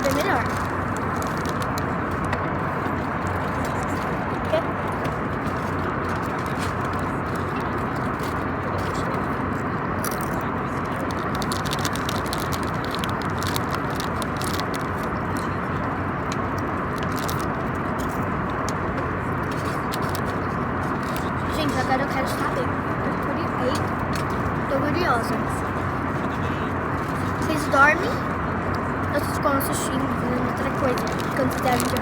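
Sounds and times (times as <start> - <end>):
small crackles and clicks: 0.0 - 3.8, 10.0 - 15.6, 16.2 - 18.8, 19.4 - 20.4, 30.6 - 32.0
airliner cabin drone: 0.0 - 32.0.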